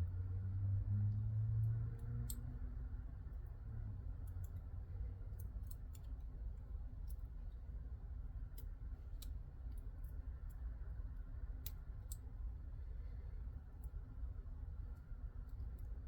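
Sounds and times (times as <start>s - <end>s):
small metallic clicks: 5.4s - 6.3s.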